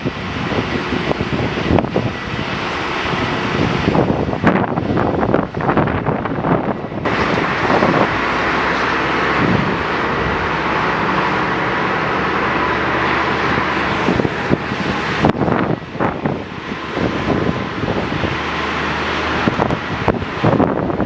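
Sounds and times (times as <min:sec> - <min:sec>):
airliner engines running: 0:00.0 - 0:21.0
faint high engine whine: 0:00.0 - 0:21.0.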